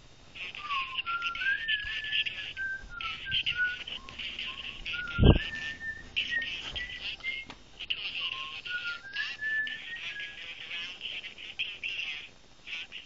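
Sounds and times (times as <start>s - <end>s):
person whistling: 0.6s - 7.5s, 8.3s - 10.5s.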